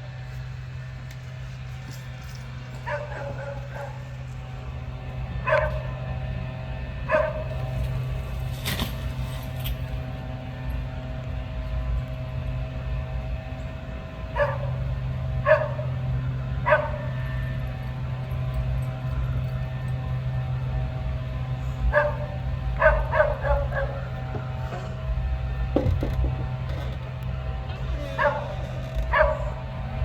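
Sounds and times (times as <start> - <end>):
steady low hum: 0.0 - 30.0
dog barking: 2.8 - 4.1, 5.4 - 6.1, 7.1 - 7.6, 14.4 - 14.8, 15.4 - 16.0, 16.6 - 17.4, 21.9 - 24.4, 28.0 - 29.6.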